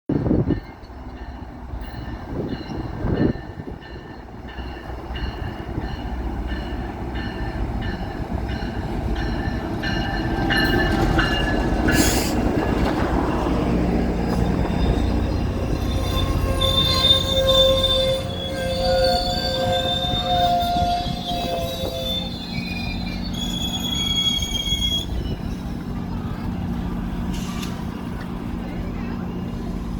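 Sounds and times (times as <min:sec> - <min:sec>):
train cars rumbling: 0:00.1 - 0:29.9
wheel and brake squeal: 0:14.2 - 0:26.0.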